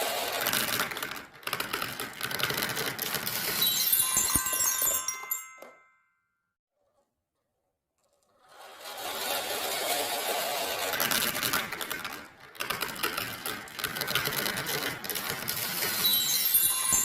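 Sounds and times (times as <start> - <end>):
marbles rattling down a run: 0.0 - 5.0, 8.9 - 17.0.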